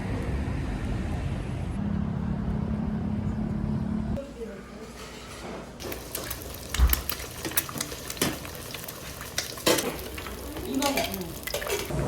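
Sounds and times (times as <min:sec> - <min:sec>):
food sizzling in a pan: 0:05.8 - 0:12.0.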